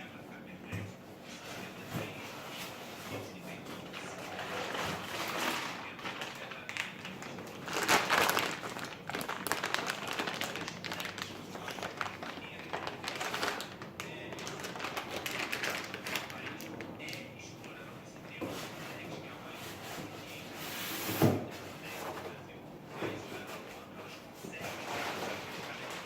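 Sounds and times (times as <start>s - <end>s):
packaging rustling: 1.7s - 17.3s, 24.6s - 26.0s.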